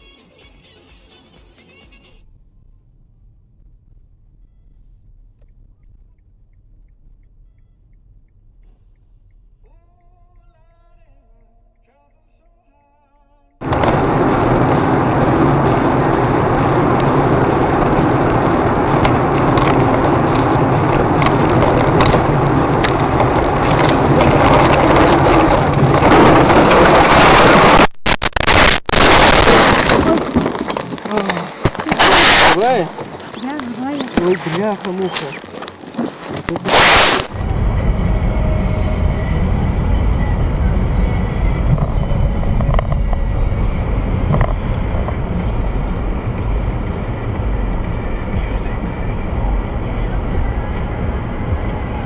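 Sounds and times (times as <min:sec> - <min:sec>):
vehicle tyres rushing on road: 0:13.6 - 0:52.0.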